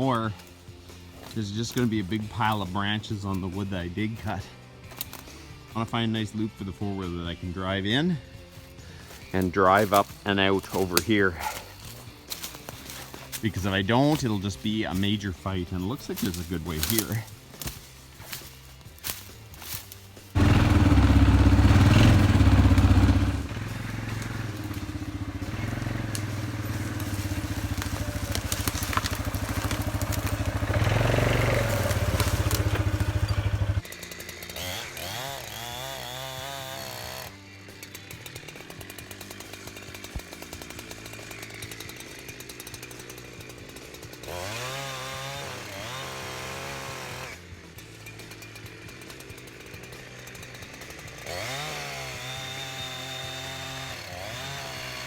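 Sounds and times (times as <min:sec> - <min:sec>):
small gasoline engine running: 0:19.1 - 0:55.0.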